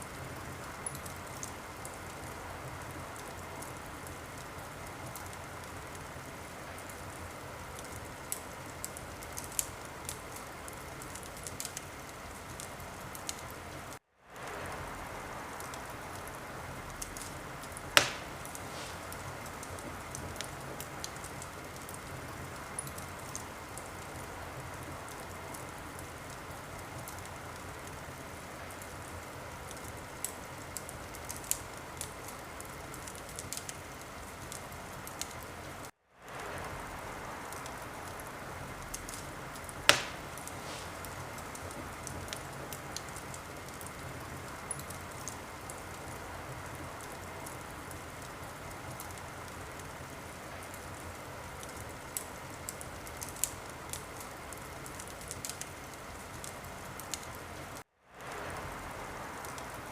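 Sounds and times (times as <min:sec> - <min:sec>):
wood fire crackling: 0:00.0 - 0:59.9
loud pop of fire: 0:17.0 - 0:20.8, 0:38.9 - 0:43.0.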